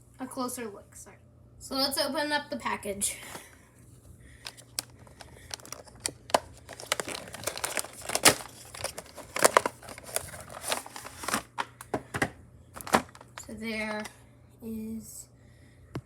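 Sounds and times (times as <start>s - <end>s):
packaging crinkling and tearing: 4.4s - 12.0s, 12.8s - 13.5s.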